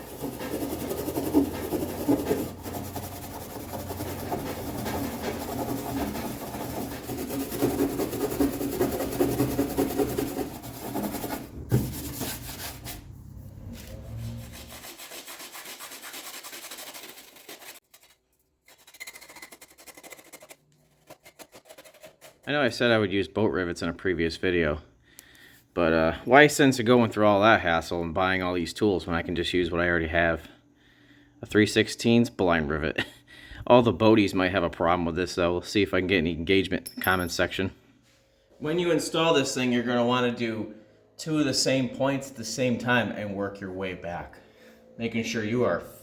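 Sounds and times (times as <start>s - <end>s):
tool scraping sheet aluminum: 0.0s - 17.8s.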